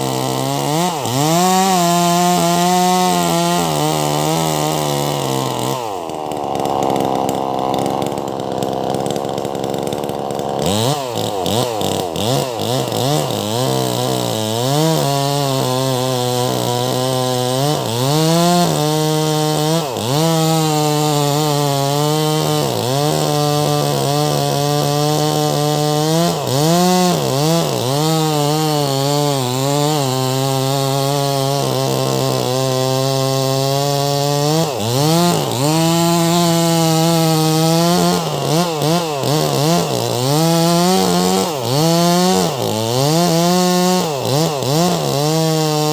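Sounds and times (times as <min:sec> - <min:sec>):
chainsaw cutting through log: 0:00.0 - 0:45.9.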